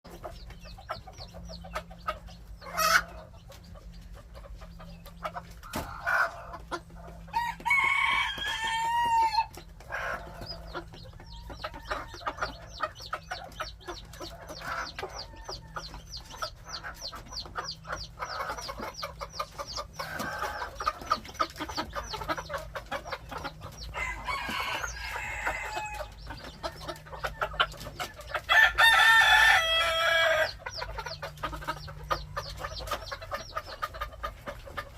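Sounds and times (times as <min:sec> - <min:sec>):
chickens clucking: 0:00.0 - 0:34.9
chicks peeping: 0:00.1 - 0:34.9
rooster crowing: 0:07.3 - 0:09.5, 0:24.0 - 0:26.1, 0:28.5 - 0:30.6.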